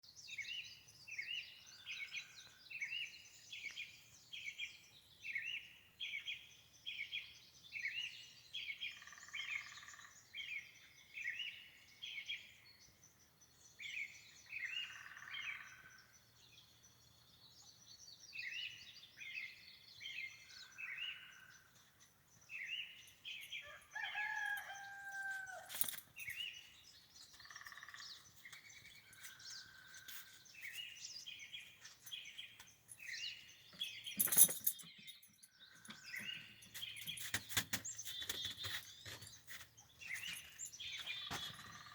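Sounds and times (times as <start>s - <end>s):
longer steady bird call: 0.1s - 39.3s
birds chirping: 0.1s - 41.9s.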